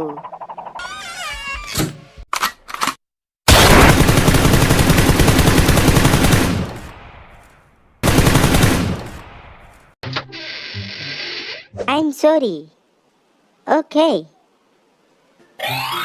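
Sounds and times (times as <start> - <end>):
machine-gun fire: 3.5 - 7.3, 8.0 - 9.7.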